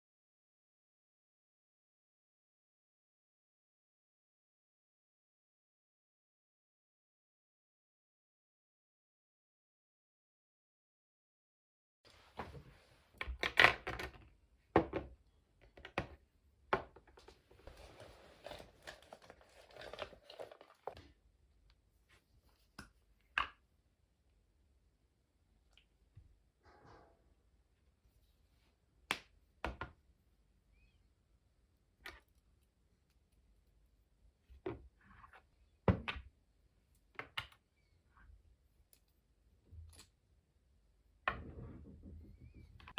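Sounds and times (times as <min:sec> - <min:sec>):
rustling and crinkling: 0:17.0 - 0:21.2.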